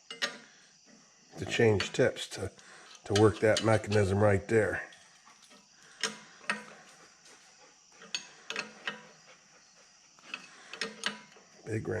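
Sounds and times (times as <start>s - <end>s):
wrench clicking on metal fittings: 0.1s - 0.4s, 8.0s - 9.1s, 10.2s - 11.4s.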